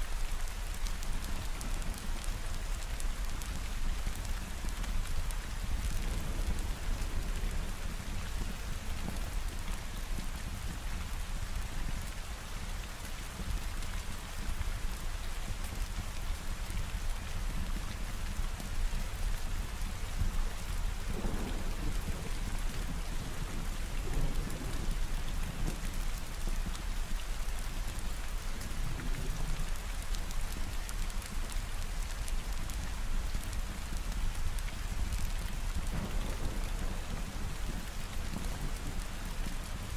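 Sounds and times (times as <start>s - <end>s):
heavy rain falling: 0.0s - 39.9s
thunder rumbling: 35.0s - 39.9s.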